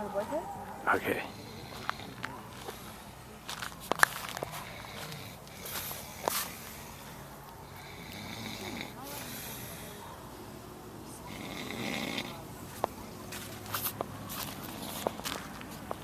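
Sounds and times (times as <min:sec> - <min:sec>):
man snoring: 0:00.9 - 0:02.2, 0:04.6 - 0:07.0, 0:07.6 - 0:09.9, 0:11.2 - 0:12.4.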